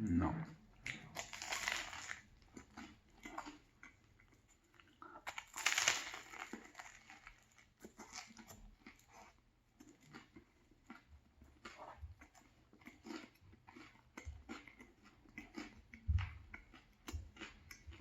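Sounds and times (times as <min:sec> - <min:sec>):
chewing and biting crusty bread: 0:00.5 - 0:18.0
crackling crunch: 0:00.9 - 0:03.6, 0:04.8 - 0:11.0.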